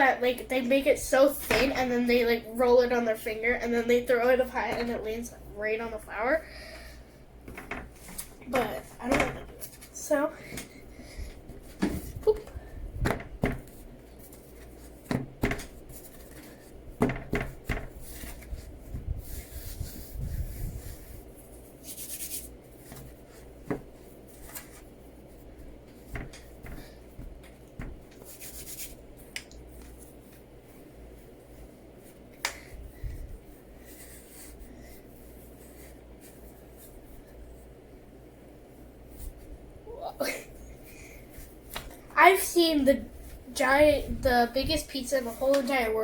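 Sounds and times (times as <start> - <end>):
hands rubbing play dough: 13.3 - 39.6.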